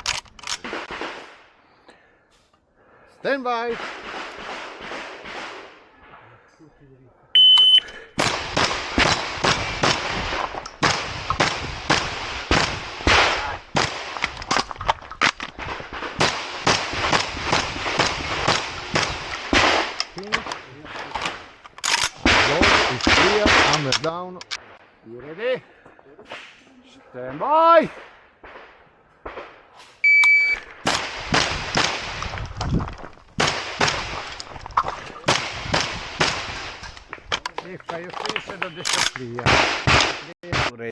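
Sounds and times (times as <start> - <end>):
shotgun shots echoing: 3.6 - 6.2, 8.2 - 14.5, 15.3 - 25.4, 30.7 - 32.3, 33.4 - 34.3, 38.7 - 40.9
shot timer beep: 7.4 - 7.9, 30.0 - 30.6.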